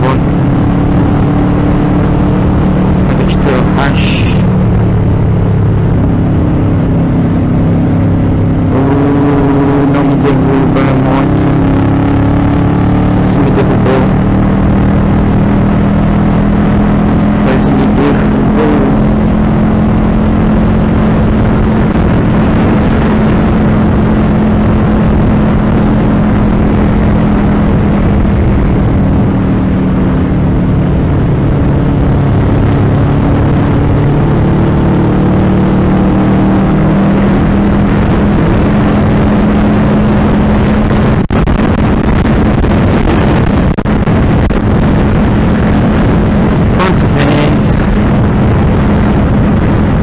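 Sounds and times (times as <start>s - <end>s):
motorcycle engine running: 0.0s - 50.0s
wind noise on microphone: 13.9s - 50.0s.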